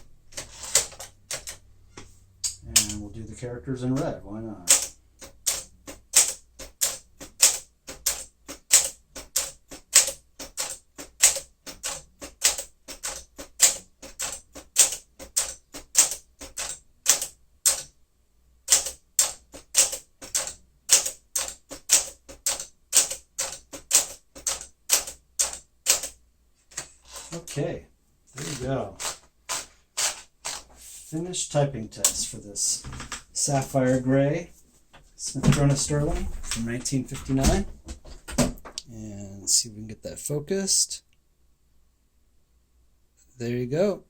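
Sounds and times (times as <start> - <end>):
manual typewriter typing: 0.0 - 1.7, 2.4 - 3.3, 3.9 - 18.0, 18.6 - 27.7, 28.3 - 30.7, 32.0 - 33.7, 35.5 - 37.7.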